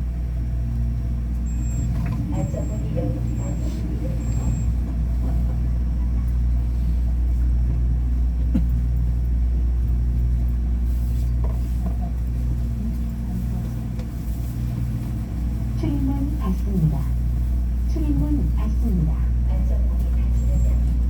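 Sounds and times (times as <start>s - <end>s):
light-rail car rumble and hum: 0.0s - 21.0s.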